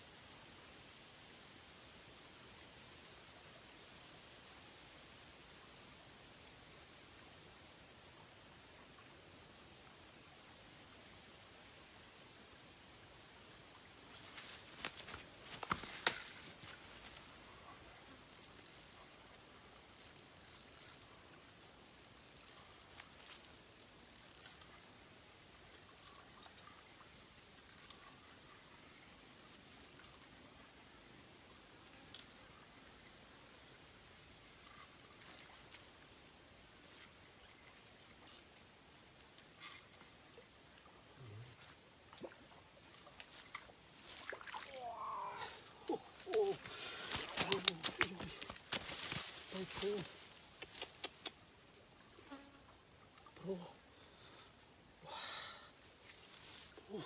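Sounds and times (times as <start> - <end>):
insects chirring: 0.0 - 57.0
faint ticks and rustles: 14.1 - 30.9, 31.8 - 33.3, 34.1 - 44.5, 45.9 - 54.9, 55.8 - 57.0.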